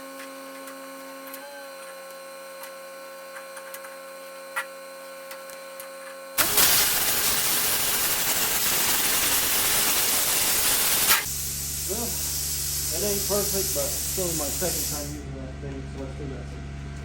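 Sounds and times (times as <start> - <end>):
plasma cutter arc hissing: 6.4 - 15.2
electrical hum: 6.4 - 17.0.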